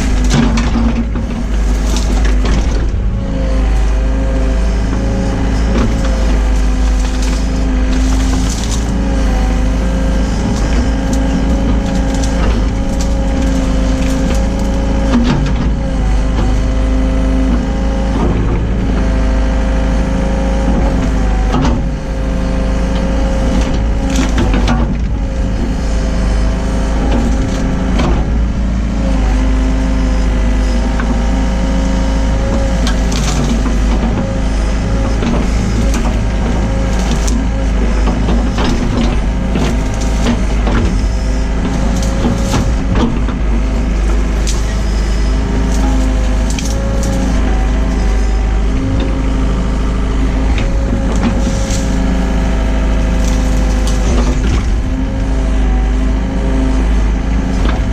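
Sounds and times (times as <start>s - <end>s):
excavator diesel engine running: 0.0s - 57.9s
bucket digging knocks and crunches: 5.0s - 15.8s.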